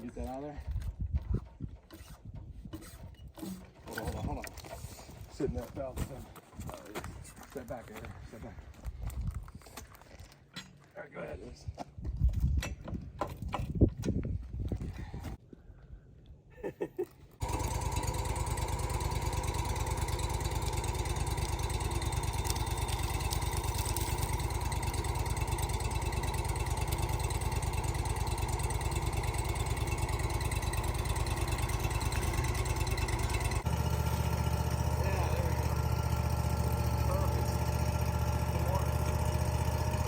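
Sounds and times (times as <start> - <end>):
sawmill engine running: 17.4 - 40.0.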